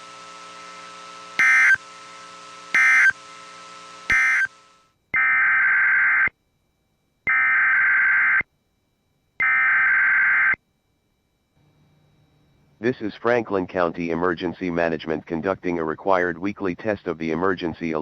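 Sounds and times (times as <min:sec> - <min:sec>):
radio station hum: 0:00.0 - 0:06.3, 0:11.6 - 0:18.0
buzzy digital data bursts: 0:01.4 - 0:01.9, 0:02.7 - 0:03.2, 0:04.1 - 0:06.3, 0:07.3 - 0:08.4, 0:09.4 - 0:10.6.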